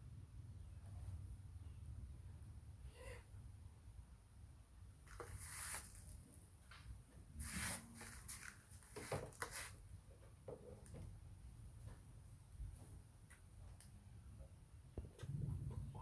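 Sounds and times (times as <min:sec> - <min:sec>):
faint rustling: 0:05.0 - 0:09.8
soft scrapes: 0:05.1 - 0:06.2, 0:07.4 - 0:09.8.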